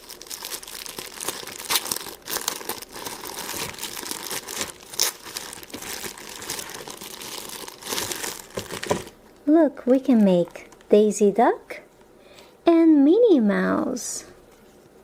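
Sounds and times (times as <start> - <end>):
packaging crinkling by hand: 0.0 - 9.2, 9.8 - 10.9.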